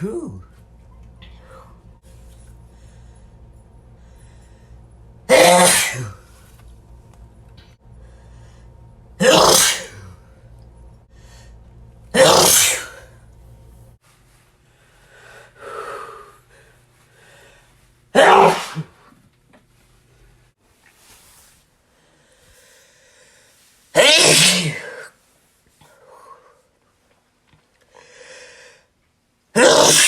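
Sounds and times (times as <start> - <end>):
person sneezing: 5.3 - 6.3, 9.2 - 10.1, 12.1 - 13.1, 18.2 - 19.1, 24.0 - 25.2, 29.6 - 30.0.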